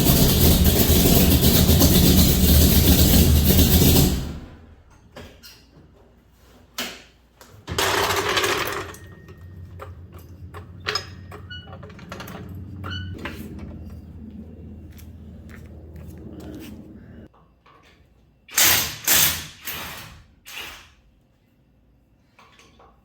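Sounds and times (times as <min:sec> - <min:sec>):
low steady hum: 0:08.8 - 0:17.4.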